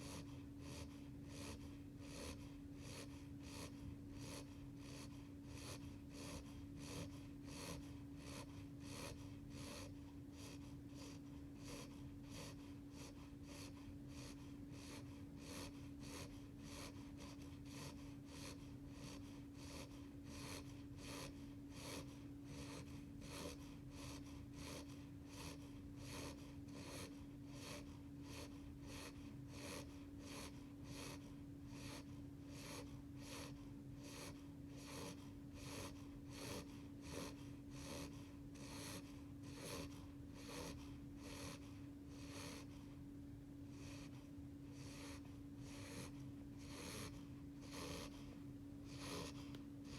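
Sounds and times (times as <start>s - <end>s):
puppy snoring softly: 0.0s - 49.9s
steady low hum: 0.0s - 49.9s.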